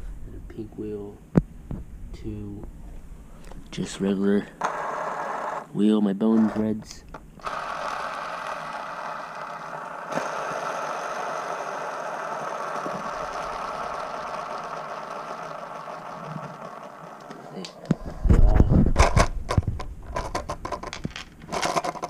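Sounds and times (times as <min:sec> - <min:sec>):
skateboard wheel bearings whirring: 0:04.6 - 0:06.8, 0:07.4 - 0:18.2, 0:19.0 - 0:22.0.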